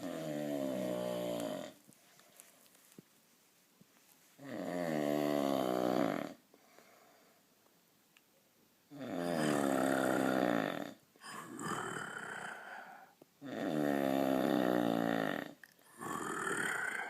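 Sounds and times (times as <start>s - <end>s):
person snoring heavily: 0.0s - 1.8s, 4.4s - 6.4s, 8.9s - 17.0s.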